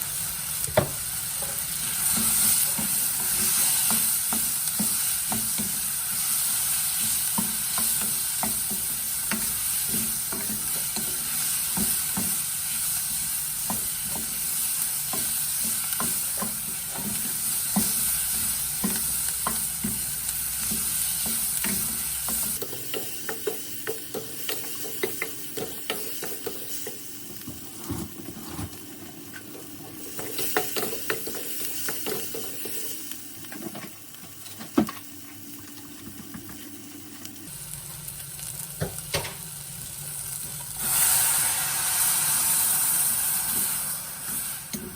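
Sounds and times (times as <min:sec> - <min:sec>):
risotto sizzling in a pan: 0:00.0 - 0:44.9
spoon stirring and scraping pan: 0:00.8 - 0:37.3.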